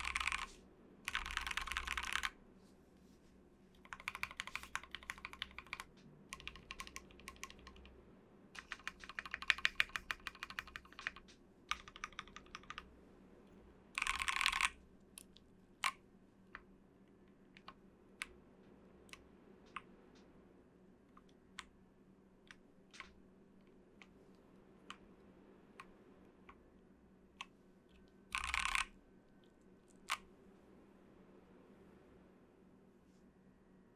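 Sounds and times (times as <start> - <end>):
mechanical keyboard keystrokes: 0.0 - 0.5, 1.1 - 2.3, 3.8 - 7.9, 8.6 - 12.8, 14.0 - 16.0, 28.3 - 28.9.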